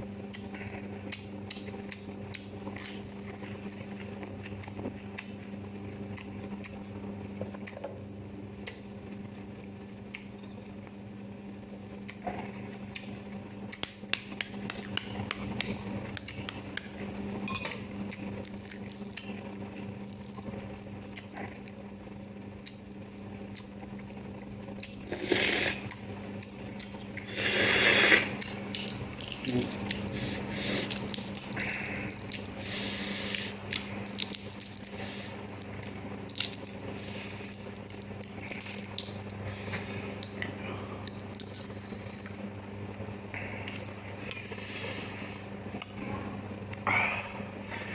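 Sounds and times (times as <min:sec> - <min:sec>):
low electrical hum: 0:00.0 - 0:47.9.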